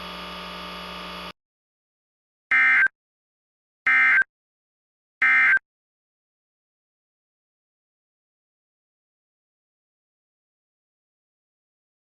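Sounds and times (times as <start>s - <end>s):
steady buzzing: 0.0s - 1.4s.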